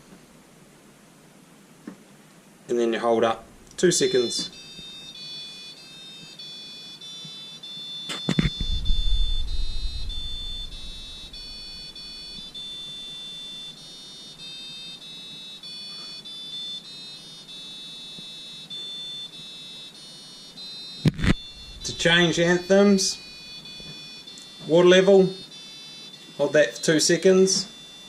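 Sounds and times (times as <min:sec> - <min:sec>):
washing machine beeper melody: 0:03.8 - 0:28.0
low rumble: 0:08.6 - 0:12.6, 0:21.4 - 0:22.4.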